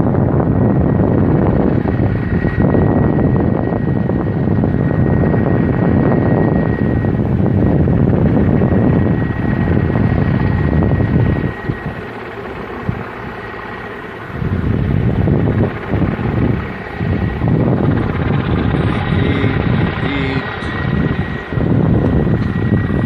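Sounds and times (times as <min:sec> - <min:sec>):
wind buffeting microphone: 0:00.0 - 0:23.0
thin steady high tone: 0:08.6 - 0:23.0.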